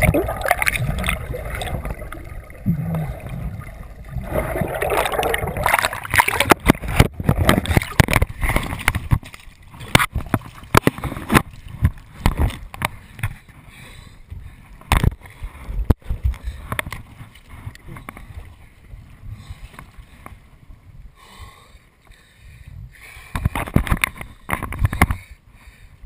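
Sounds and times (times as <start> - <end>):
water rushing and splashing: 0.0 - 13.3
knocks and buffets against camera: 5.8 - 13.6, 14.8 - 18.4, 23.3 - 25.3.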